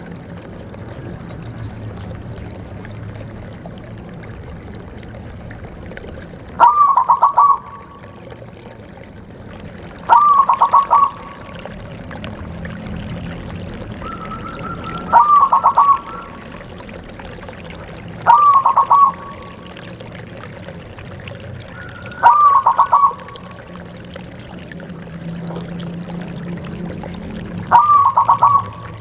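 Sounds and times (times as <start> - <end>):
dove cooing: 6.6 - 8.2, 9.9 - 11.7, 13.9 - 19.9, 21.6 - 23.8, 27.6 - 29.0.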